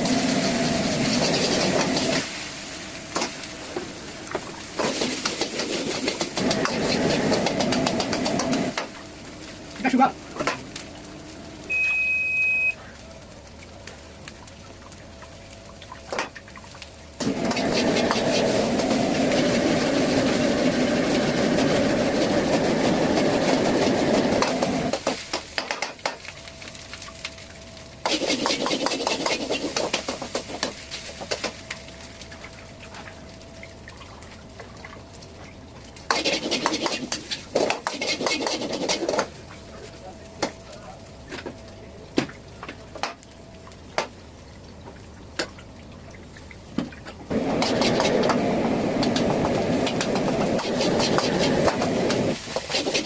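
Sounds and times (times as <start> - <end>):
faint steady hum: 0.0 - 53.0
short high beep: 11.7 - 12.8.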